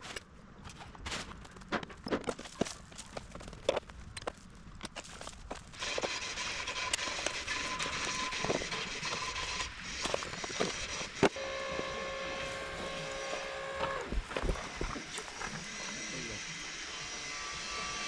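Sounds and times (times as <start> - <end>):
machinery whine and hiss: 5.8 - 18.0.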